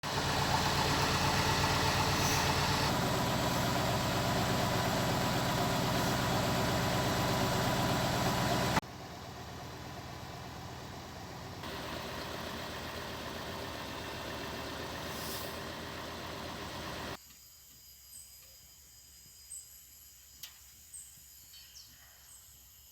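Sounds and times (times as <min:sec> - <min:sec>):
diesel engine idling: 0:00.0 - 0:17.2.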